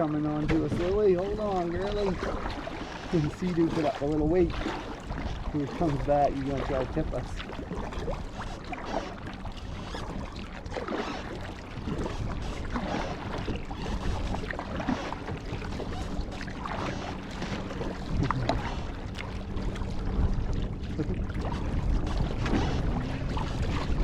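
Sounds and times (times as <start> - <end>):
water slapping against kayak hull: 0.0 - 24.0.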